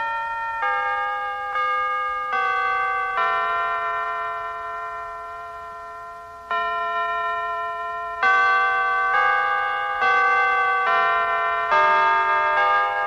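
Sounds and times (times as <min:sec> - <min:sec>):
church chimes ringing: 0:00.0 - 0:13.0.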